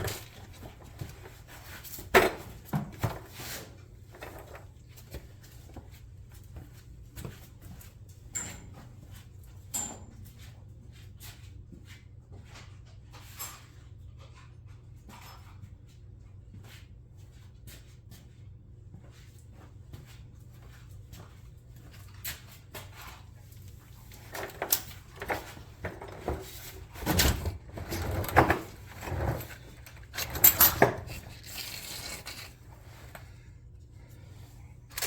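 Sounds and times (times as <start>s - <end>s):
metal tools clinking and rattling: 8.3s - 8.8s, 9.7s - 10.3s, 24.1s - 33.3s.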